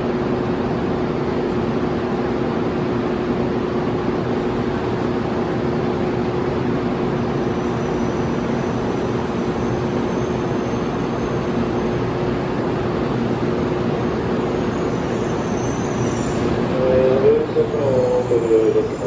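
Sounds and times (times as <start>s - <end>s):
train cabin running noise: 0.0s - 19.0s.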